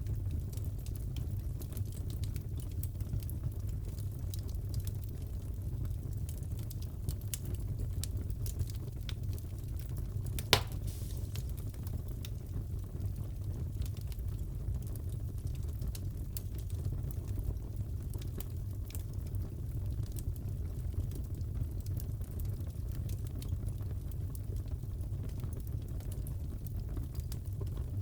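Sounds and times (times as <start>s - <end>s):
wood fire crackling: 0.0s - 28.0s
loud pop from fire: 10.4s - 11.8s.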